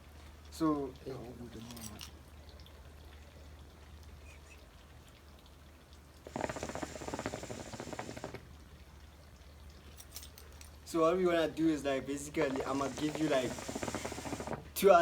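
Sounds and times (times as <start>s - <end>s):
rapid crackling rustle: 6.2s - 8.6s, 12.2s - 14.8s.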